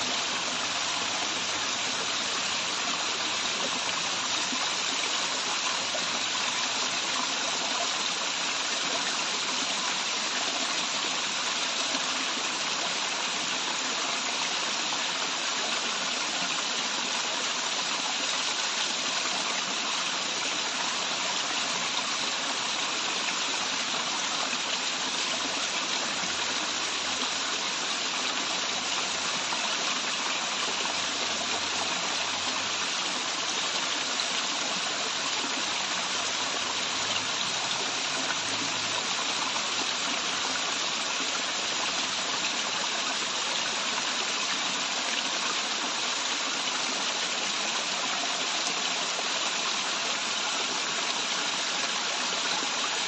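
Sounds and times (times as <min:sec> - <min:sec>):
waterfall rushing: 0:16.8 - 0:53.0.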